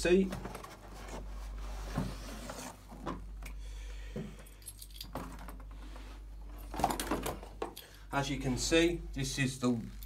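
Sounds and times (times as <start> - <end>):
small metal parts clinking: 4.4 - 5.6.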